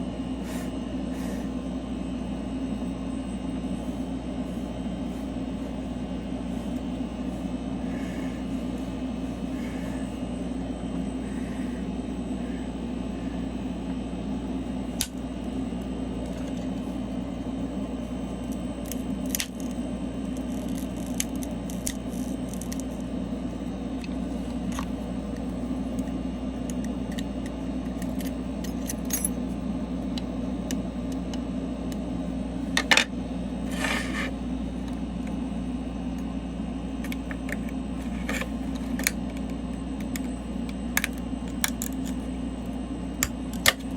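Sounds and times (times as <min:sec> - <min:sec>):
low mechanical hum: 0:00.0 - 0:43.9
tools and parts clicking: 0:41.0 - 0:42.2, 0:43.2 - 0:43.9.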